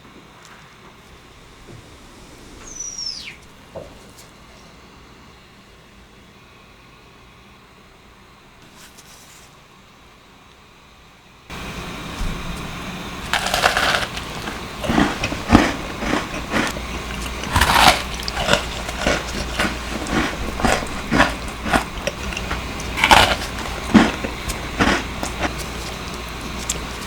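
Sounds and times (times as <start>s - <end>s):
steady low hum: 0.0s - 8.8s, 9.6s - 27.0s
crunching cookies being chewed: 13.2s - 27.0s.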